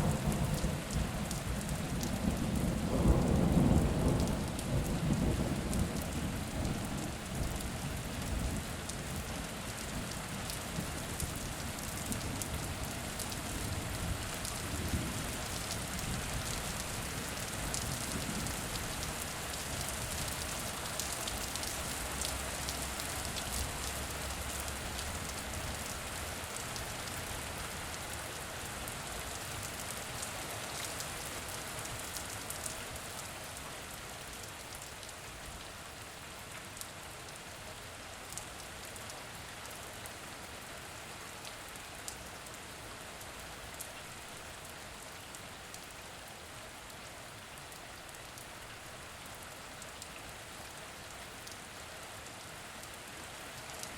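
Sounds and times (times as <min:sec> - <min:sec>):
steady rain falling: 0:00.0 - 0:53.9.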